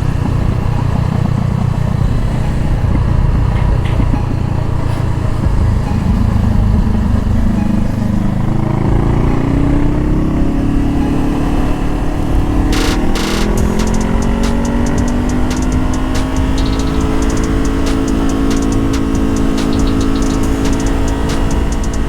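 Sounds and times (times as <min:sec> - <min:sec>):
motorcycle engine accelerating: 0:05.4 - 0:22.0.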